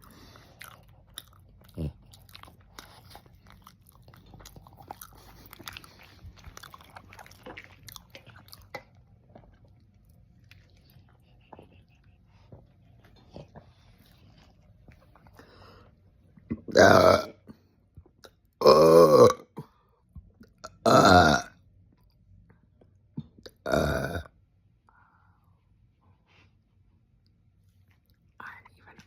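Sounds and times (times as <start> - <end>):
close chewing: 0.0 - 15.6.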